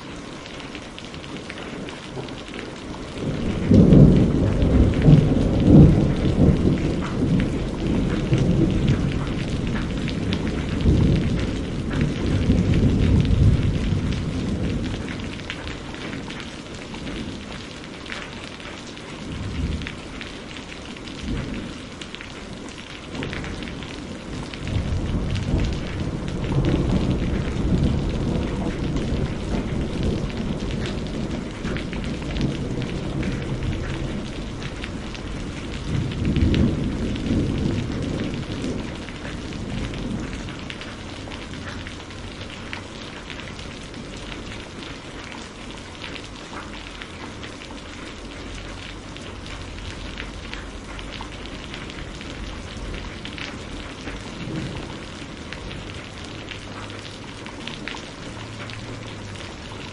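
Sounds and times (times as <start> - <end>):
steady rain: 0.0 - 59.9
rolling thunder: 3.1 - 16.4, 23.0 - 44.9, 51.4 - 59.6.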